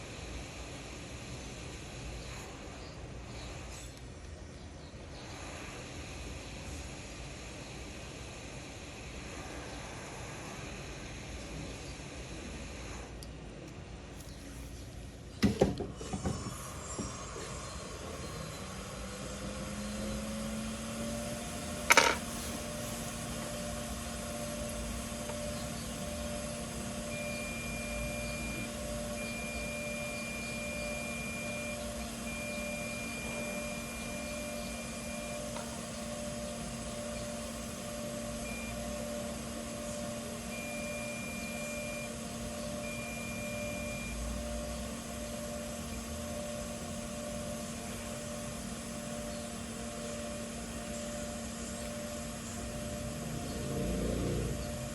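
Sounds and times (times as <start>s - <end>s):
small electric motor humming: 16.1s - 54.9s.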